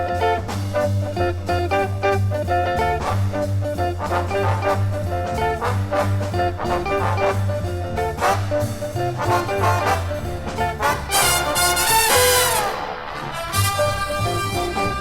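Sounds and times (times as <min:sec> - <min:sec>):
low bass notes: 0:00.0 - 0:12.7, 0:13.6 - 0:15.0
jazz orchestra playing swing: 0:00.0 - 0:15.0
bright brass swell: 0:08.2 - 0:15.0.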